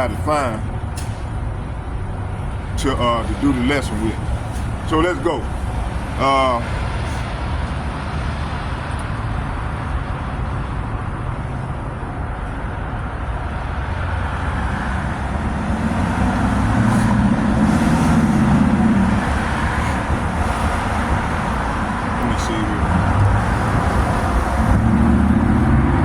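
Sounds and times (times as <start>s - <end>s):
low droning hum: 0.0s - 26.0s
motor vehicle rumble: 0.0s - 26.0s.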